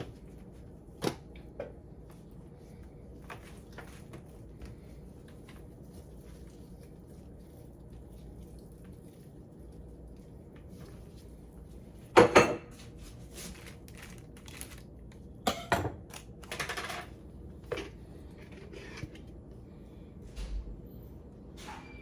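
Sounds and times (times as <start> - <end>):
dishes and utensils clinking: 12.2 - 12.8, 15.5 - 17.1.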